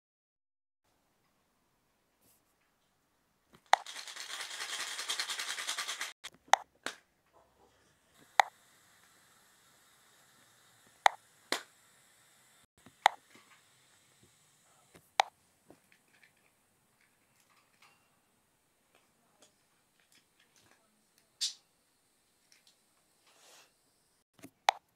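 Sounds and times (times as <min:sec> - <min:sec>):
packaging rustling: 0:03.7 - 0:06.2.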